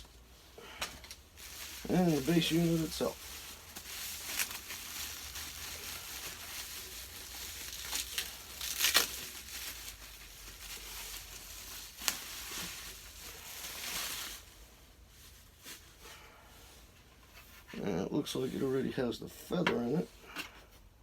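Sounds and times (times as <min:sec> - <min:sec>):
packaging rustling and crinkling: 0:00.0 - 0:16.1.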